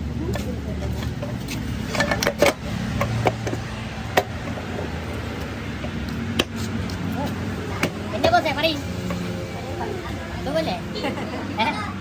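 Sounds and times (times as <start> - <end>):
sharp clicks and knocks: 0.3 - 4.4.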